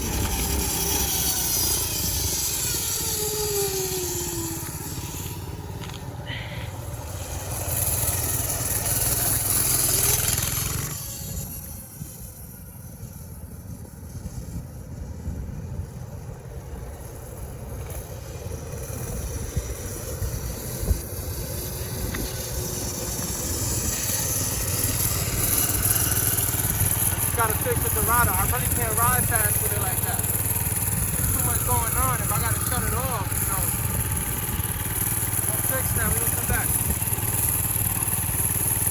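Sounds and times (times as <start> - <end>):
small motorbike engine running: 0.0 - 38.9
man talking: 27.3 - 30.3, 31.2 - 33.8, 35.5 - 36.8.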